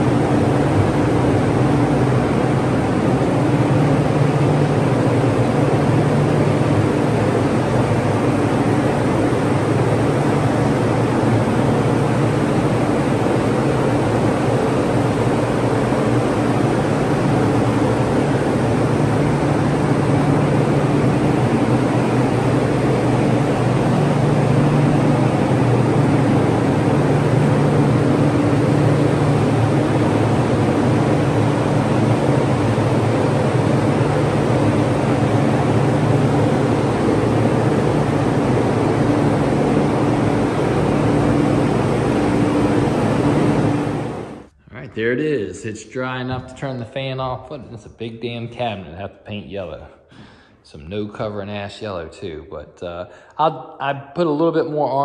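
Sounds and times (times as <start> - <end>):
ventilation fan running: 0.0 - 55.0.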